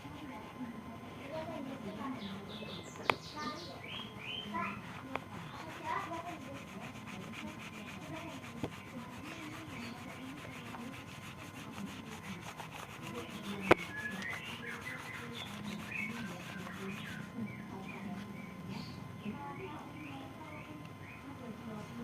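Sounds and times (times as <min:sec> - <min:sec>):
steady rubbing noise: 0:00.0 - 0:18.4
faint bird chirps: 0:01.3 - 0:05.7, 0:09.4 - 0:10.7, 0:13.2 - 0:21.3.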